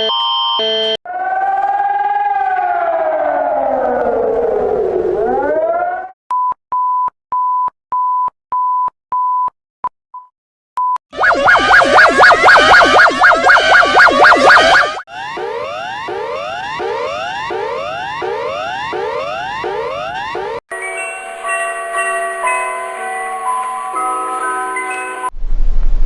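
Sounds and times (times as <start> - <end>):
rising and falling siren: 0.6 - 6.2, 11.2 - 20.6
fast warbling alarm tone: 1.1 - 6.2, 11.2 - 20.6
short electronic blips: 11.2 - 15.0
steady electronic beeps: 11.2 - 18.8.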